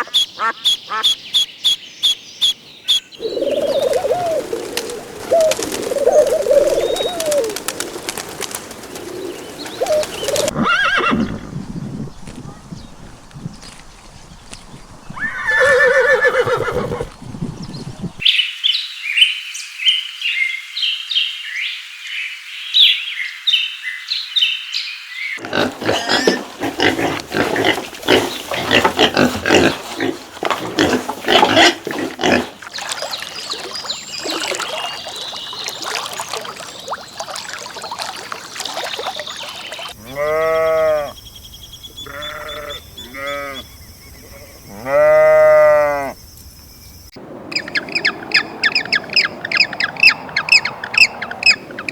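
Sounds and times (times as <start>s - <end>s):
rapid rough animal calls: 25.4s - 34.8s
pitched animal call: 40.0s - 41.2s, 42.0s - 43.7s, 44.3s - 46.2s.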